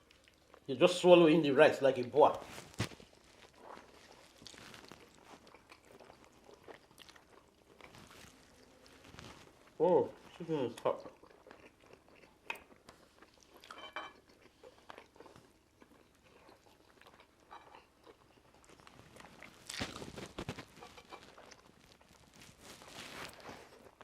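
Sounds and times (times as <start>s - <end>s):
people chewing food: 0.0s - 1.2s, 1.9s - 24.0s.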